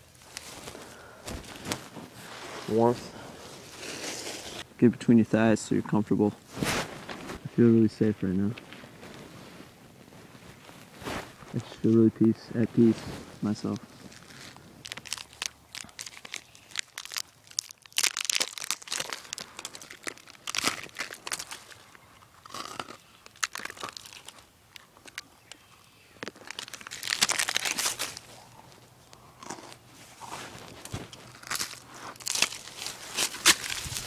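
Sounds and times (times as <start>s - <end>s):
dry leaves crunching and rustling: 0.0s - 4.6s, 12.8s - 22.0s, 26.2s - 28.5s, 30.0s - 34.0s.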